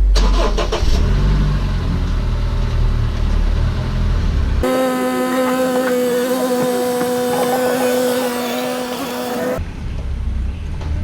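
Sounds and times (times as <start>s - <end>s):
car rolling with low rumble: 0.8s - 4.7s
humming brake noise: 4.6s - 9.6s.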